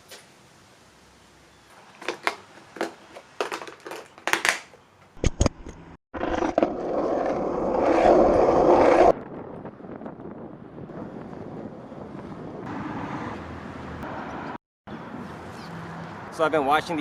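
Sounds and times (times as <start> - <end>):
handling clicks and knocks: 1.7 - 5.8
wind on microphone: 7.2 - 12.7.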